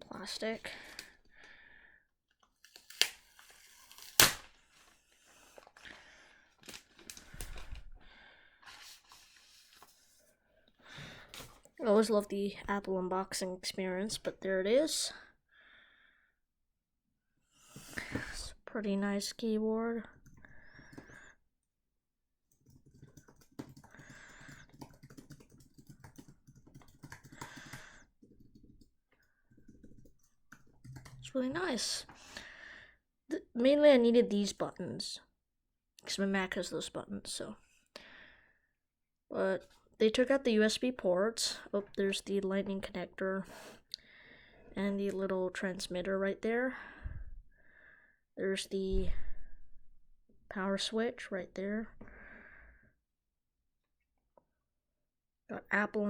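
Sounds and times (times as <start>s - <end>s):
sharp plastic crackles: 2.6s - 4.8s
plastic wrap rustling: 6.6s - 7.9s
keyboard typing clicks: 22.5s - 28.9s, 29.7s - 31.3s.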